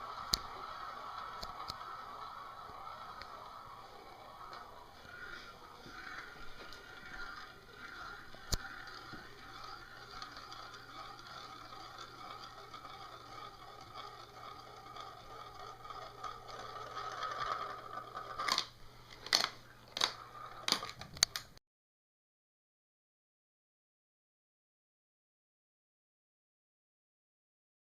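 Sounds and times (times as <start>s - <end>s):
marbles clacking on track: 0.0s - 21.6s
marbles rolling on track: 0.0s - 21.6s.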